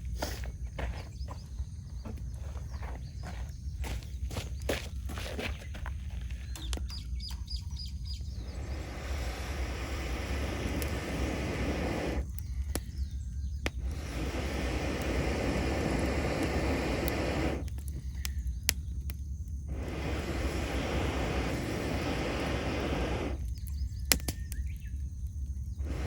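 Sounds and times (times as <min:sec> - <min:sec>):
campfire crackling and popping: 0:06.4 - 0:26.0
steady rushing noise: 0:08.3 - 0:12.4, 0:13.7 - 0:17.7, 0:19.7 - 0:23.4, 0:25.8 - 0:26.0.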